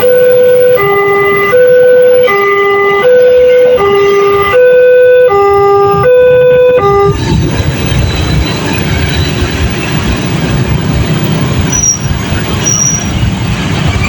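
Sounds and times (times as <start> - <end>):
two-tone level crossing siren: 0.0 - 9.8.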